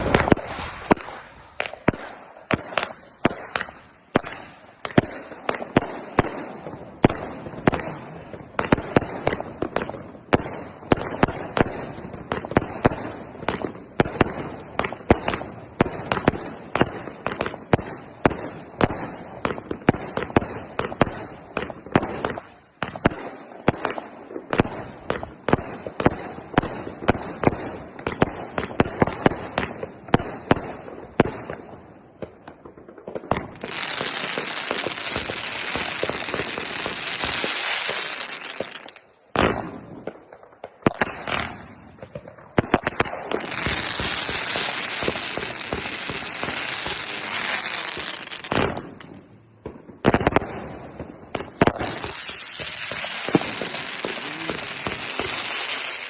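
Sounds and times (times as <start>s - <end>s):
loud dense firework hiss: 0.0s - 4.9s, 33.4s - 39.0s, 43.3s - 49.2s, 50.6s - 56.0s
firework shots firing: 0.0s - 56.0s.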